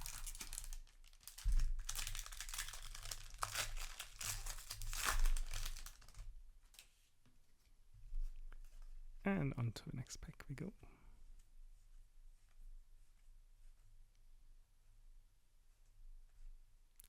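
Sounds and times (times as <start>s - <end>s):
foil wrapper crinkling: 0.0s - 6.9s.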